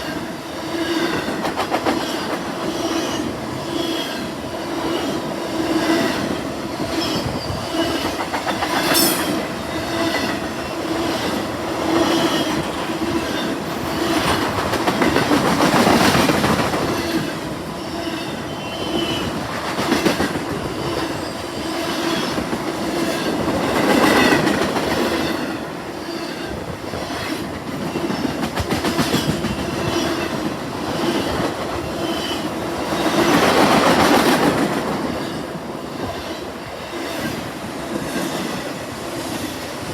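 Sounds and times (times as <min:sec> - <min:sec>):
faint ringing from train wheels: 0:00.0 - 0:39.9
freight train cars rolling past: 0:00.0 - 0:39.9.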